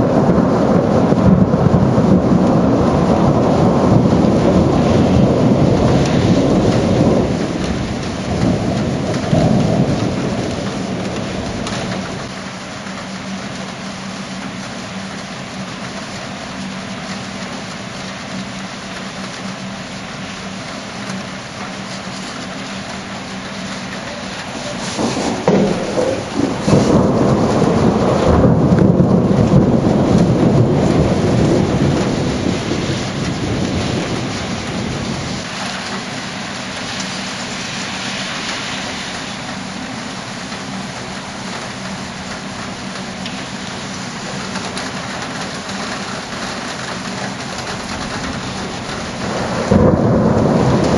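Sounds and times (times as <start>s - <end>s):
thunder cracks and rumble: 0.0s - 13.8s, 23.7s - 41.2s, 44.2s - 50.9s
steady rain: 0.0s - 50.9s.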